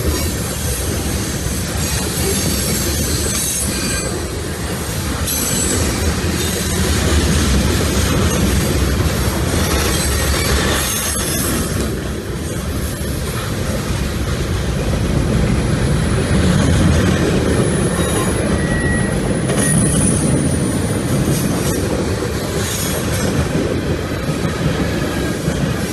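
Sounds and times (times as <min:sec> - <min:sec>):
freight train rumbling past: 0:00.0 - 0:25.9
steel wheels squealing: 0:01.1 - 0:06.9, 0:09.5 - 0:11.8, 0:17.6 - 0:21.8.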